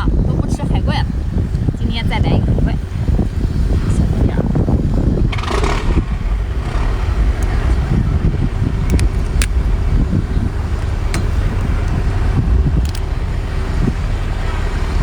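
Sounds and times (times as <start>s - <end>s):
steady low rumble: 0.0s - 15.0s
sharp clicks: 5.3s - 8.0s, 8.8s - 10.1s, 12.7s - 13.3s.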